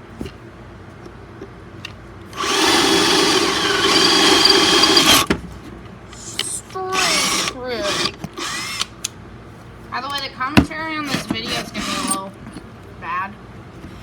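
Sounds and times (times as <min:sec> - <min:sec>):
power drill drilling into wood: 0:02.4 - 0:05.3.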